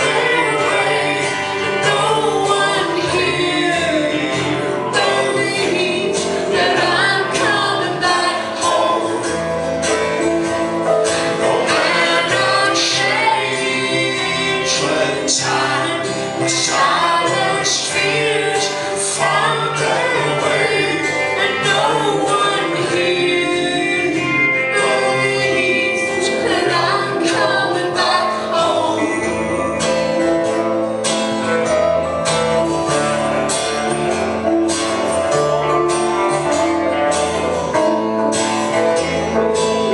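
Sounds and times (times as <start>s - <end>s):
live band music: 0.0s - 39.9s
voices singing: 0.0s - 39.9s.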